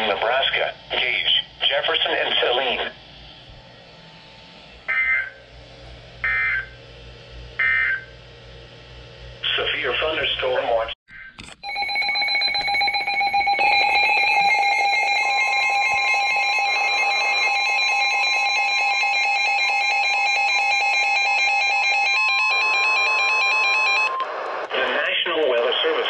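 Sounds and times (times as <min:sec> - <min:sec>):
steady electronic alert tones: 0:07.6 - 0:08.1, 0:11.6 - 0:24.2
fast warbling tone: 0:11.8 - 0:18.8.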